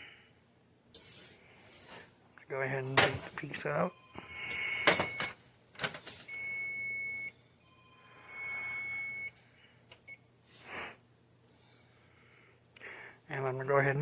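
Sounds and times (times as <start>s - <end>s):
electronic beeper long beeps: 3.9s - 5.4s, 6.3s - 9.3s.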